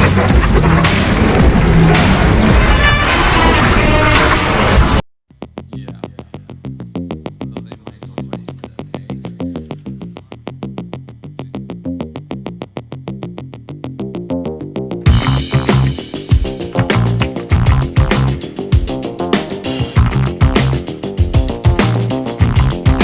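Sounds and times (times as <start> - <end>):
electronic music: 15.1 - 23.0.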